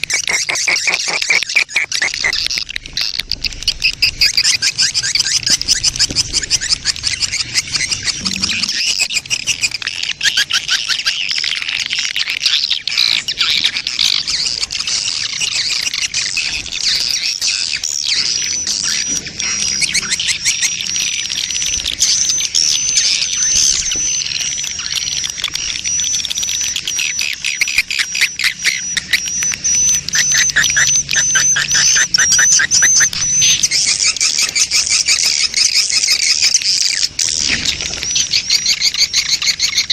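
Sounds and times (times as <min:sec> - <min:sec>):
swiftlets chirping and twittering: 0:00.0 - 0:39.9
thin high wavering whistle: 0:25.9 - 0:34.2.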